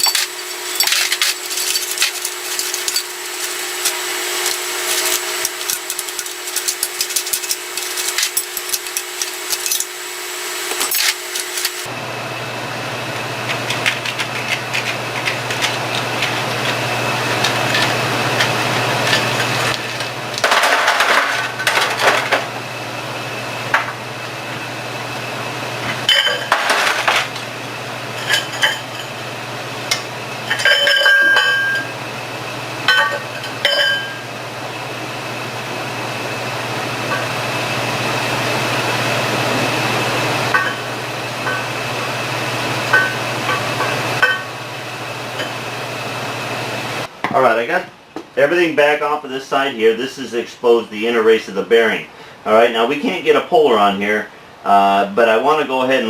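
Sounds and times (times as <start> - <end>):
steel tools clinking and clattering: 0.0 - 10.0, 10.7 - 11.9, 13.5 - 22.4, 26.0 - 27.5, 28.1 - 29.2, 29.9 - 31.9, 32.9 - 34.2
steady shop hum: 0.0 - 56.0.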